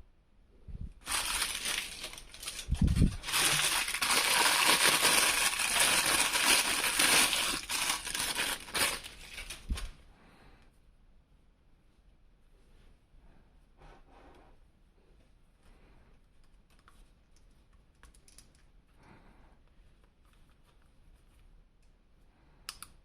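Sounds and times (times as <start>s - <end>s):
toy packaging crinkling: 1.0s - 10.0s.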